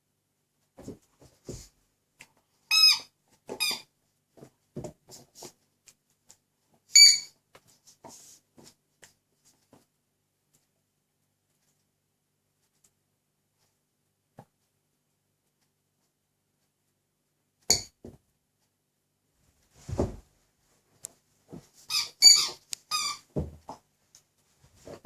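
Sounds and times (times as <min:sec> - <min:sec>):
squeaky toy squeaking: 0:02.7 - 0:03.9, 0:06.9 - 0:07.4, 0:21.9 - 0:23.3.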